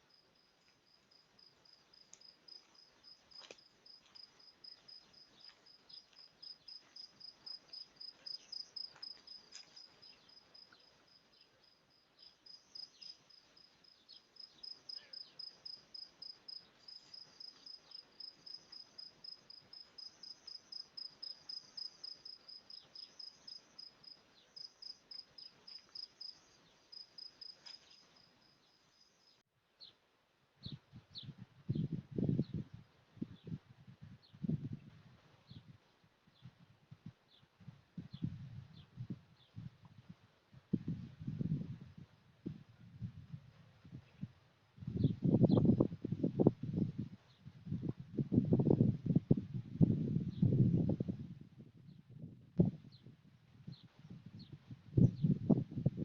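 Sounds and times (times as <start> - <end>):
cricket chirping: 0.0 - 29.4.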